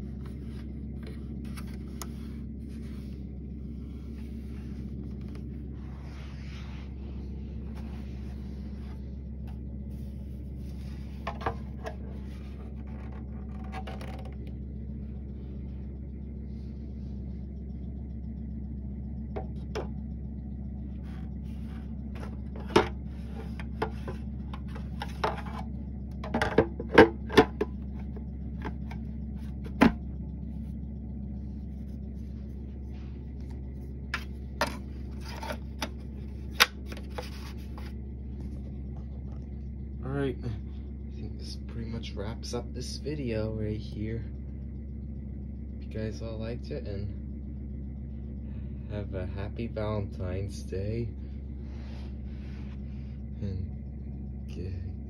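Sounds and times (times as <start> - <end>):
steady low hum: 0.0 - 55.0
plastic clicks and knocks: 12.8 - 14.5.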